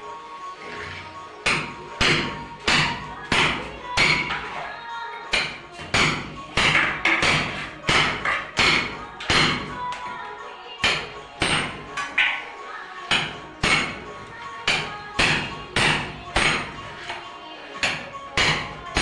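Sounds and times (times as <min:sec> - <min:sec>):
background music: 0:00.0 - 0:19.0
tools knocking on cement render: 0:05.4 - 0:10.1.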